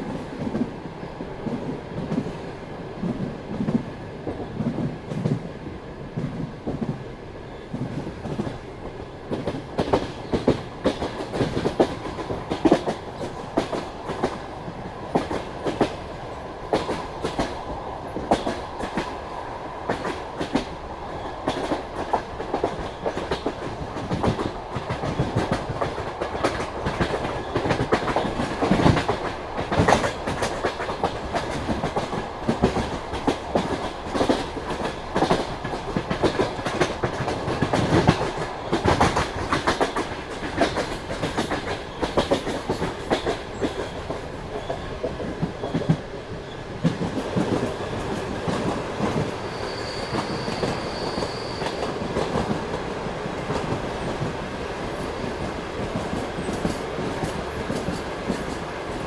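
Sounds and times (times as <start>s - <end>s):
train running rumble: 1.4s - 46.1s
train wheels clacking over rail joints: 16.7s - 19.2s, 21.4s - 46.1s, 55.8s - 59.0s.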